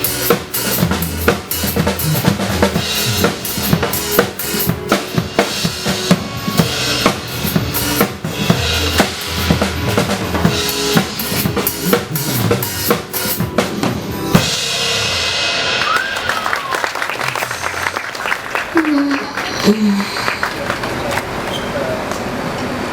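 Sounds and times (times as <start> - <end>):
live band music: 0.0 - 20.9
rising-then-falling whistle: 15.8 - 17.1
applause: 15.8 - 22.3.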